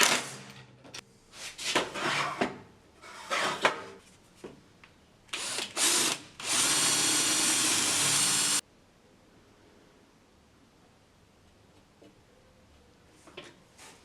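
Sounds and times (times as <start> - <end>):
cordless drill running: 5.4 - 8.6.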